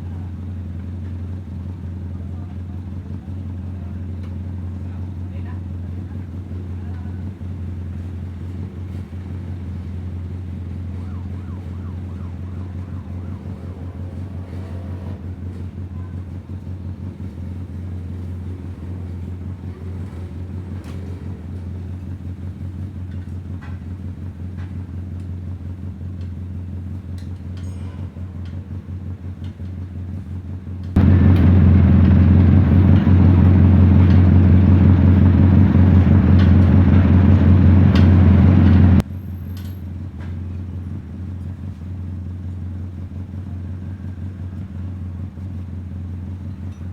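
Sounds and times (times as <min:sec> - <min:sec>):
motorcycle engine ticking: 0:28.4 - 0:39.0.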